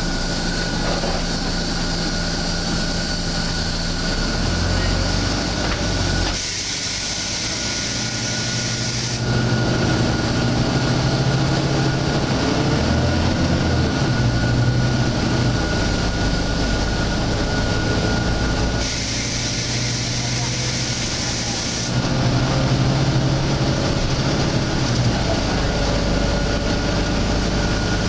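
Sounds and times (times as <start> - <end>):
bus diesel engine running: 0.0 - 28.0
steady high whine: 0.0 - 28.0
hiss: 6.4 - 9.2, 18.8 - 22.0.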